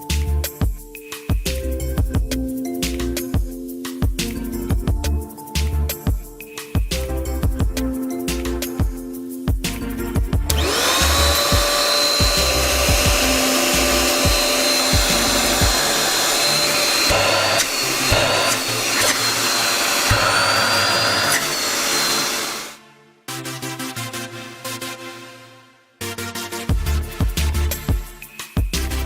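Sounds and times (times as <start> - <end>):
background music with a beat: 0.0 - 20.5, 26.0 - 29.0
vacuum cleaner motor whining: 10.5 - 22.8.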